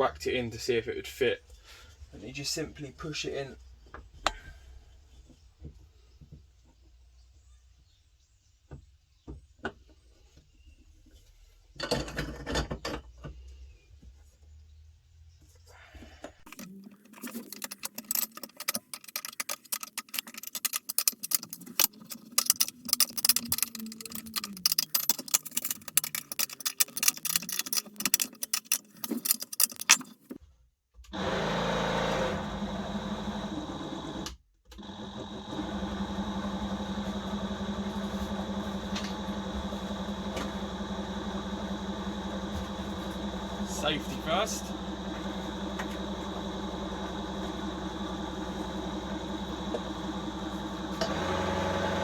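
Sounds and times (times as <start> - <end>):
clatter of clicks and rattles: 16.5 - 30.4
lathe motor hum and whine: 31.2 - 52.0.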